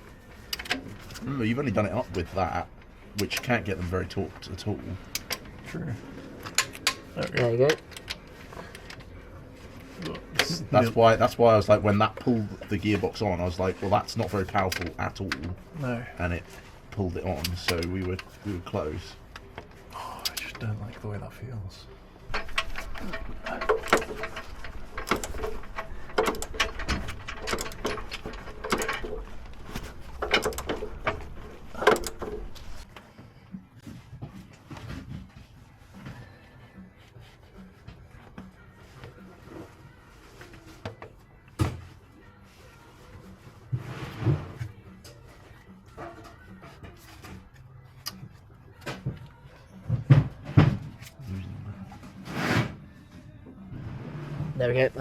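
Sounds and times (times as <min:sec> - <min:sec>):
metal tools clanking: 0:22.3 - 0:32.8.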